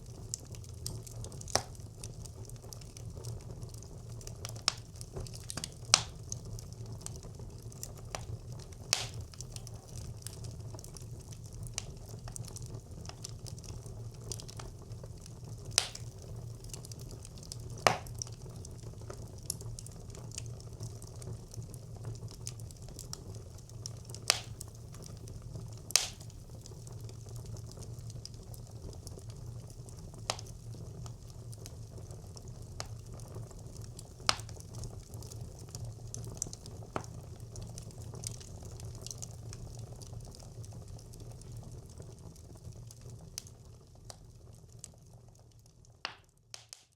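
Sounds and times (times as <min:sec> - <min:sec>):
wood crackling and popping: 0:00.0 - 0:46.9
fire rushing: 0:08.9 - 0:09.3, 0:15.8 - 0:16.2, 0:24.3 - 0:24.8, 0:25.9 - 0:26.3.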